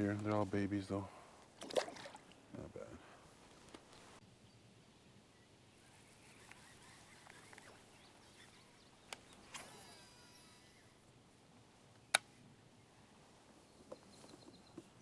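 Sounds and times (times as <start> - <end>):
faint outdoor background: 0.0 - 15.0
brief whirr: 6.0 - 11.0.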